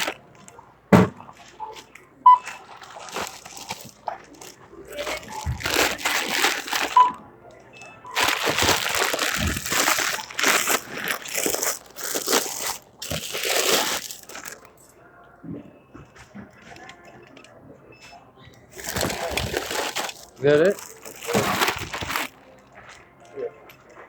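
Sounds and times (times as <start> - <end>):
bags rustling and crinkling: 0.0 - 7.2, 8.1 - 14.8, 18.7 - 23.0.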